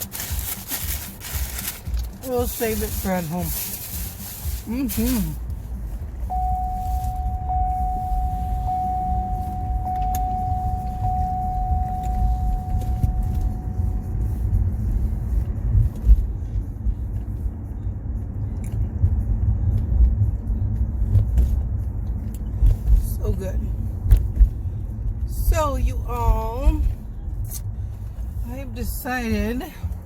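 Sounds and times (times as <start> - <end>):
road and engine rumble in car: 0.0 - 30.0
electronic tone: 6.3 - 14.1.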